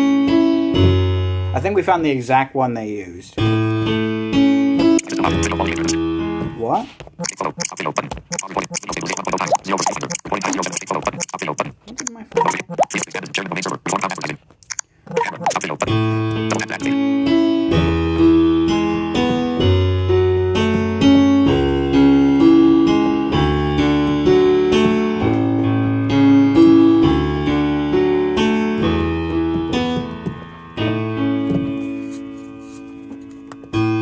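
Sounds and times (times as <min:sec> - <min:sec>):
piano chords: 0:00.0 - 0:02.1, 0:03.4 - 0:06.6, 0:15.2 - 0:34.0.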